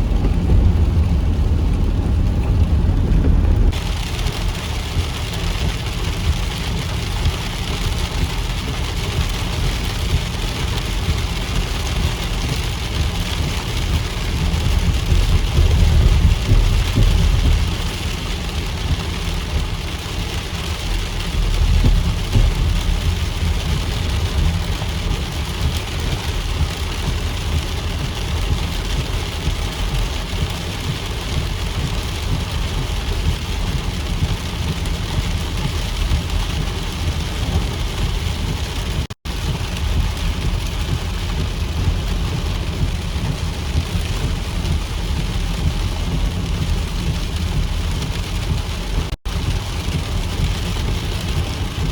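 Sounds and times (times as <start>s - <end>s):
low rumble: 0.0s - 28.8s
heavy rain falling: 0.0s - 51.9s.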